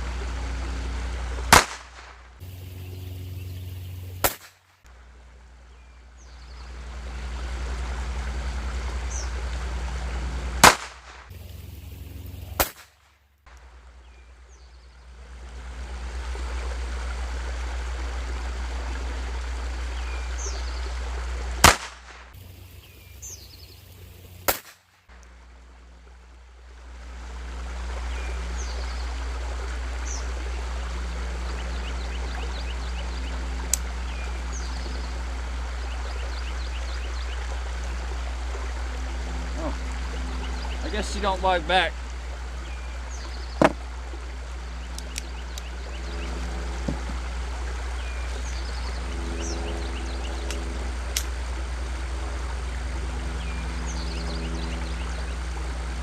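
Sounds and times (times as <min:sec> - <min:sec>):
outdoor background noise: 0:00.0 - 0:56.0
pistol shots: 0:01.5 - 0:02.1, 0:04.2 - 0:04.6, 0:10.6 - 0:11.2, 0:12.6 - 0:12.9, 0:21.6 - 0:22.1.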